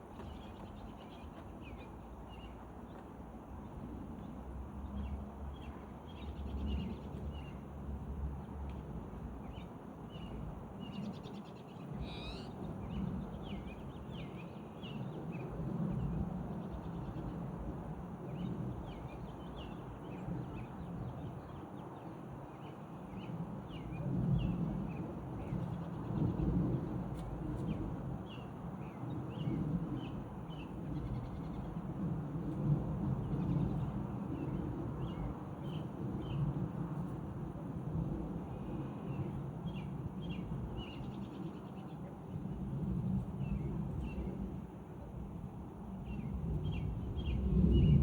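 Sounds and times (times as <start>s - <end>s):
small birds chirping: 10.2s - 15.0s
low outdoor rumble: 41.8s - 48.0s.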